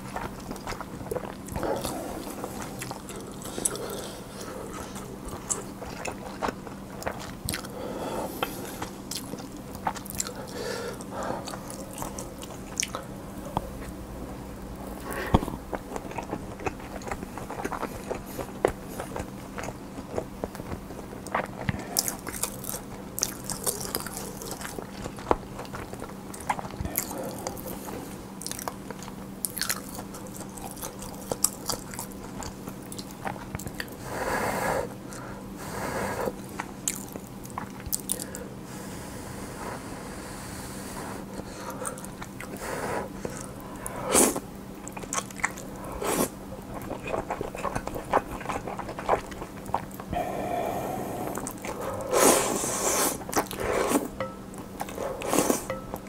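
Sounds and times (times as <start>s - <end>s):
faint steady hum: 0.0s - 56.0s
person biting and chewing food: 41.7s - 50.3s.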